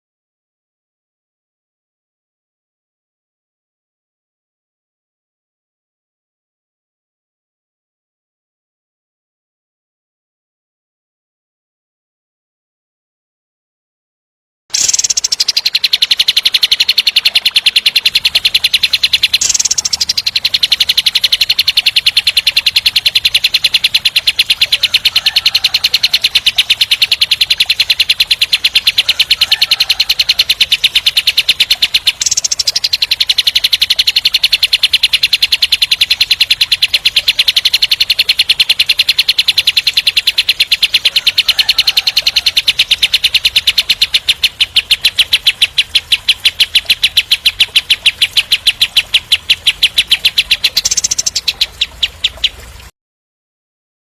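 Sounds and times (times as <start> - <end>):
songbird rapid trill: 14.7 - 52.9.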